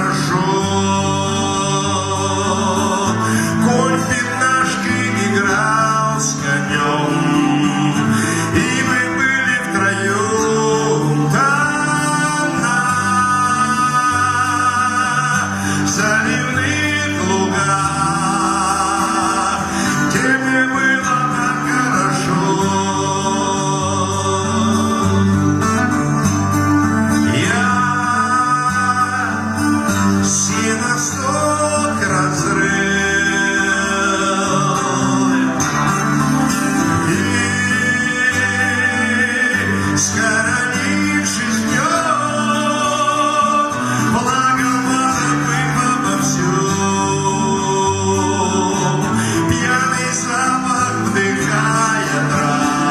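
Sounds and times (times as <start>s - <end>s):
guitar accompaniment: 0.0s - 52.9s
man singing with vibrato: 0.0s - 52.9s.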